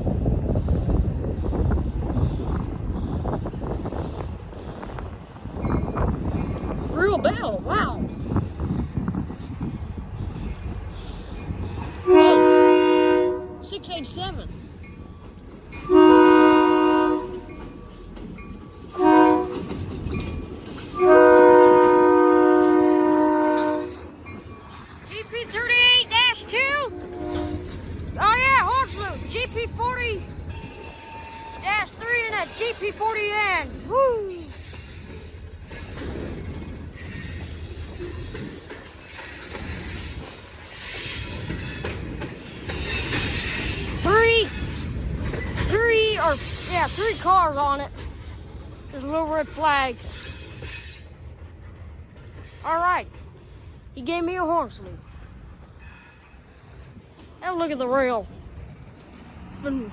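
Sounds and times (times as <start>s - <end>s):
passing train rumble: 0.0s - 59.9s
locomotive air horn blasts: 12.0s - 13.7s, 15.9s - 17.5s, 18.9s - 19.7s, 21.0s - 24.0s, 26.8s - 27.8s
clacks over rail joints: 17.2s - 54.0s, 55.0s - 59.9s
wheel squeal: 34.4s - 42.0s.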